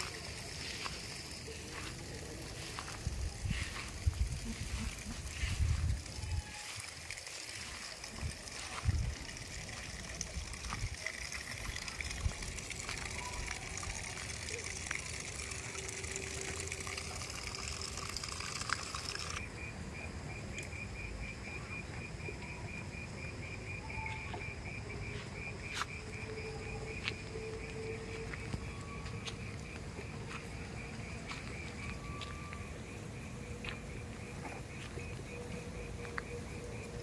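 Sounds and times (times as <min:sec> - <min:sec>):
steady rushing hiss: 0:00.0 - 0:19.5
insect chirping: 0:00.0 - 0:37.0.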